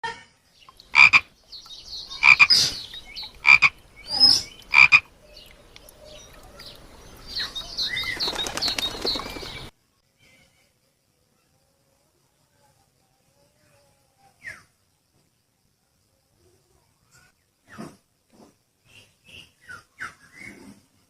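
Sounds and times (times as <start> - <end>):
high chirping calls: 0.5 - 9.7
frog croaking: 0.8 - 1.4, 2.1 - 5.5.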